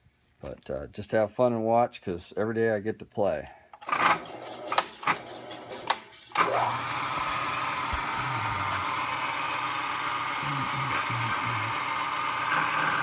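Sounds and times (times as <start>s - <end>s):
milling machine spindle motor: 3.9s - 13.0s.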